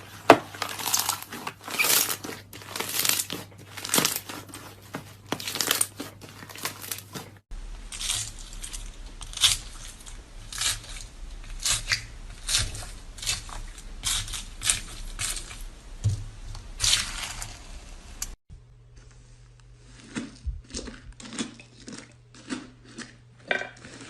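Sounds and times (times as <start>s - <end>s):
crunchy slime being squeezed: 0.1s - 7.2s.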